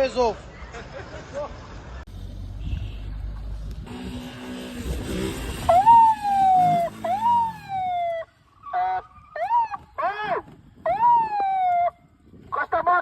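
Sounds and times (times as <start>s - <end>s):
person imitating a siren: 5.6s - 12.0s.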